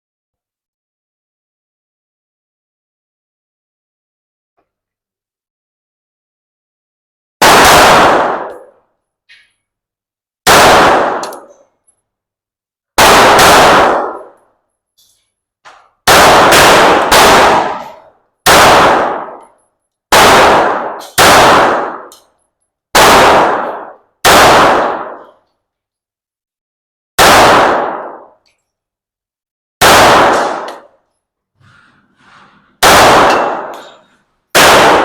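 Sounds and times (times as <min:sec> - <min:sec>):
handgun shots with echo: 0:07.4 - 0:08.8, 0:10.5 - 0:11.7, 0:13.0 - 0:14.4, 0:16.0 - 0:22.3, 0:23.0 - 0:25.4, 0:27.2 - 0:28.4, 0:29.8 - 0:31.0, 0:32.8 - 0:35.0.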